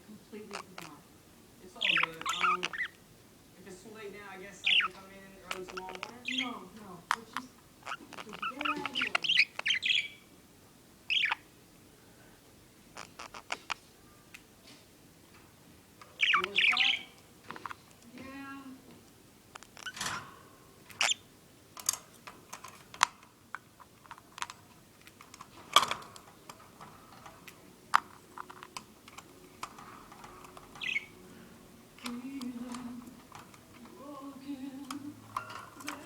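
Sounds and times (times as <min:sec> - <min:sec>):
budgerigar chattering: 0:00.4 - 0:01.0, 0:01.7 - 0:03.0, 0:04.6 - 0:10.3, 0:11.1 - 0:11.5, 0:13.0 - 0:13.8, 0:16.2 - 0:17.2, 0:20.9 - 0:21.3, 0:30.7 - 0:31.3.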